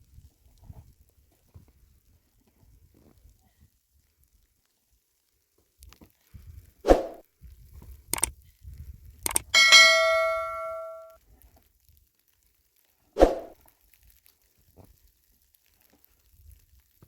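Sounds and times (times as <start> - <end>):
metal object ringing: 9.6 - 11.1.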